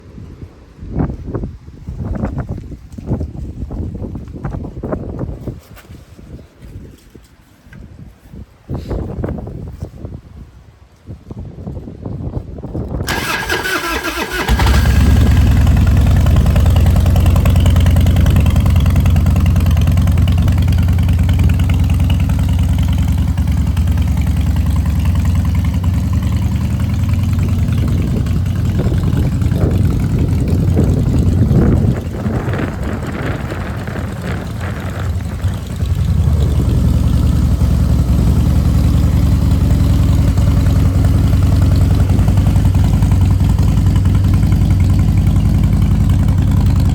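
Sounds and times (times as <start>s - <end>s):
starter motor cranking: 13.1s - 20.2s
motorcycle engine running loud: 13.1s - 46.9s.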